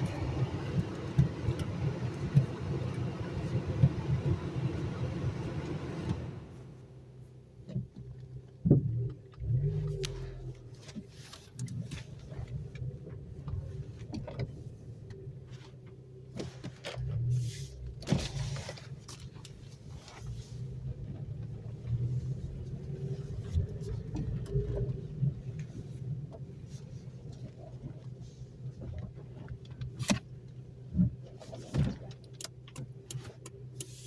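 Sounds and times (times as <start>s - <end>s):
car engine humming: 0.0s - 34.0s
road noise: 0.0s - 34.0s.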